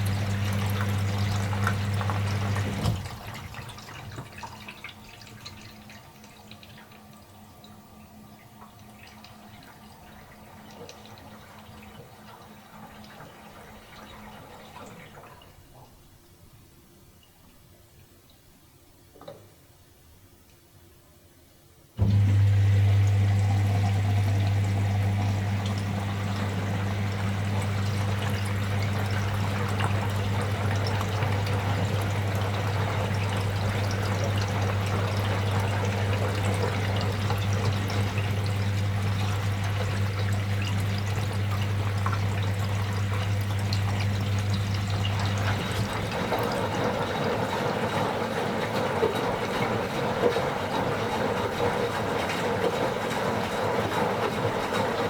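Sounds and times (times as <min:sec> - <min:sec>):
water rushing into washing machine: 0:00.0 - 0:15.8, 0:22.0 - 0:55.0
low electrical hum: 0:15.1 - 0:47.5
water sloshing: 0:22.8 - 0:49.4.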